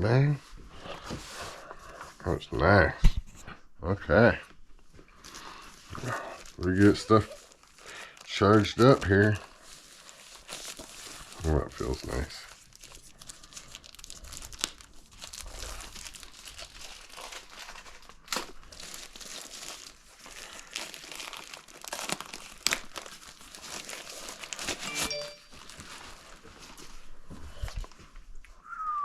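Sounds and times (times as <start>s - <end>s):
packaging crinkling and rustling: 4.5s - 28.4s
brief high tone: 24.9s - 25.6s.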